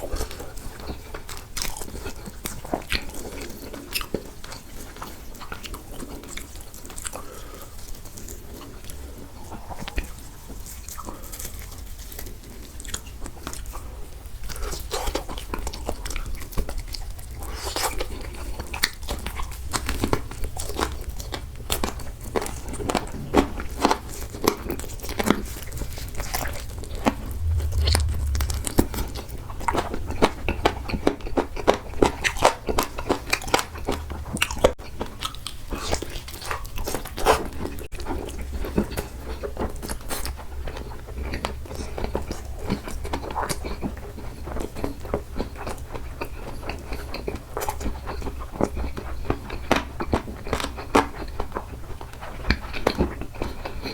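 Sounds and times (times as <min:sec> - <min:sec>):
low rumble: 0:25.3 - 0:31.6, 0:33.0 - 0:34.7.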